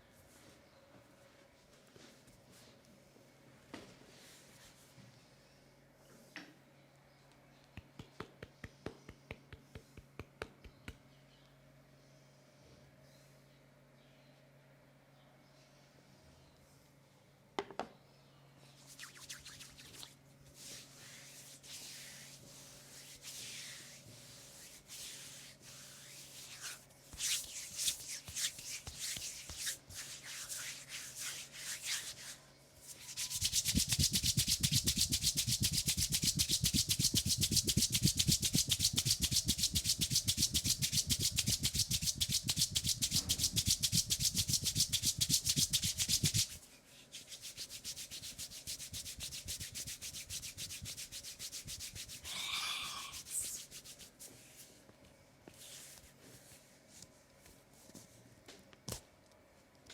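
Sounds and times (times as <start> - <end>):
hands rubbing skin: 18.9 - 54.6.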